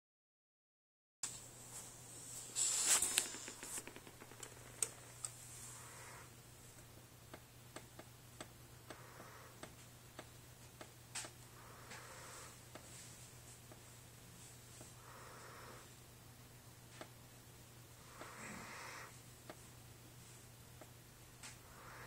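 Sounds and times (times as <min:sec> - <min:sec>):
rustling and clatter: 0:01.3 - 0:05.6
dog snoring softly: 0:03.0 - 0:06.3, 0:08.9 - 0:09.7, 0:11.6 - 0:12.8, 0:14.8 - 0:16.0, 0:18.0 - 0:19.2, 0:21.6 - 0:22.0.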